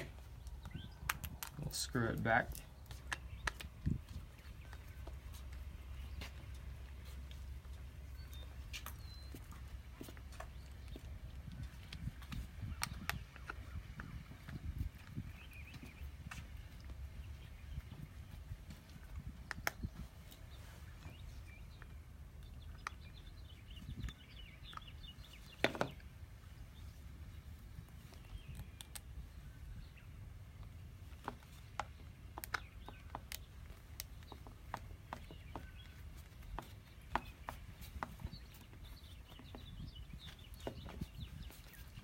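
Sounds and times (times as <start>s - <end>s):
small birds chirping: 0.0s - 42.0s
sharp clicks: 0.4s - 3.8s, 19.4s - 19.9s, 28.4s - 29.1s.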